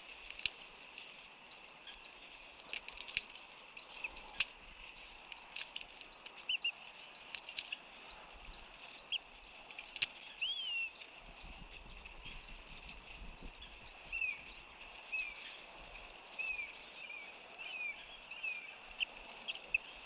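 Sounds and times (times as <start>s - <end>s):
birds chirping: 1.3s - 20.0s.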